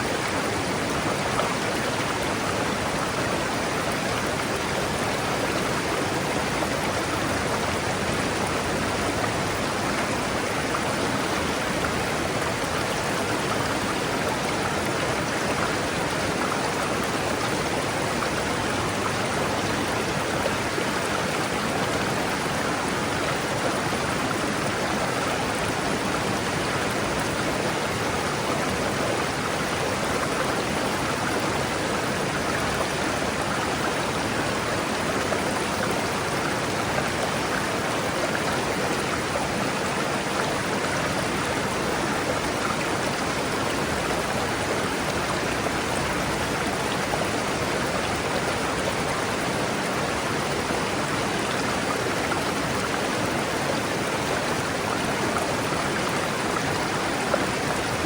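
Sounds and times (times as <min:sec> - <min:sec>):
river water rushing over rocks: 0:00.0 - 0:58.0.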